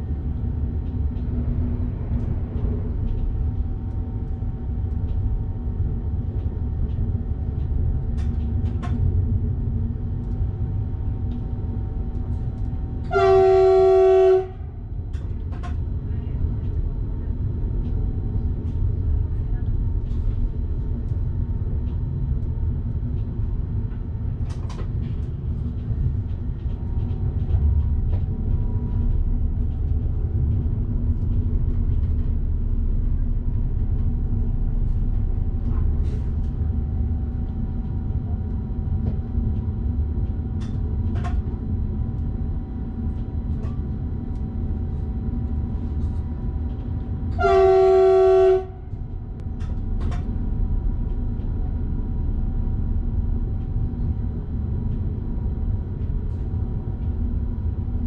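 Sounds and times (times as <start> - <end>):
train rumbling on rails: 0.0 - 58.0
train horn blast: 13.1 - 14.8, 47.3 - 48.9.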